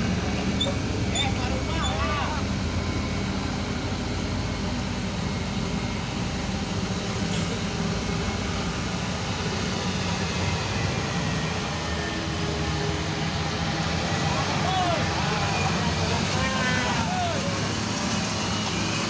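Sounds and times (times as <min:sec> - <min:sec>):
vehicle engine humming: 0:00.0 - 0:19.0.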